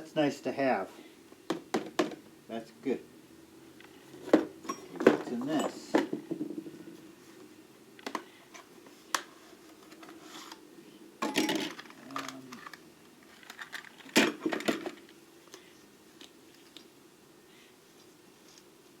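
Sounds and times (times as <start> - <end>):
metal tools clicking and clinking: 4.6 - 6.0, 11.2 - 12.8.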